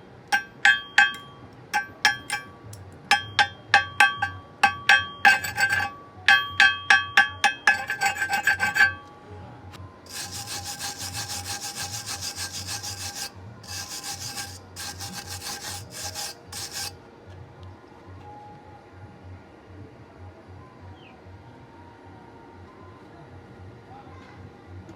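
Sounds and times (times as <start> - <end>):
wire brush scrubbing metal: 0.3 - 2.5, 3.1 - 6.0, 6.6 - 9.0, 10.1 - 16.9
hammer on steel ringing: 0.3 - 9.1, 10.1 - 16.9.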